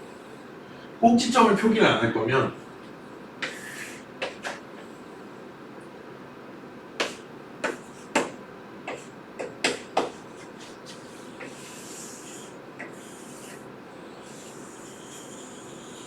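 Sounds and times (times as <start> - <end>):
soft scratching strokes: 3.4 - 4.0, 10.4 - 15.6
sharp taps on a board: 4.2 - 4.6, 7.0 - 10.2.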